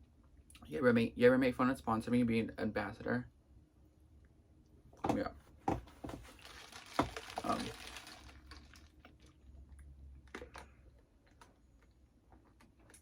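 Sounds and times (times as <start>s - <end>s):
chewing food: 6.3s - 13.0s.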